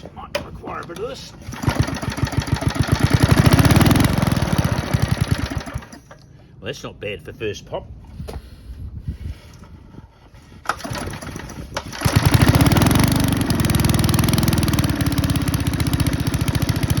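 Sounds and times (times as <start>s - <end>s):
small engine starting and running: 1.3s - 6.3s, 10.6s - 17.0s.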